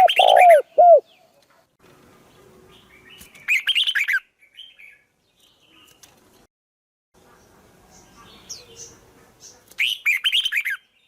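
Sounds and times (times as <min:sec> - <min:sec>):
bird calling arched note: 0:00.0 - 0:01.1.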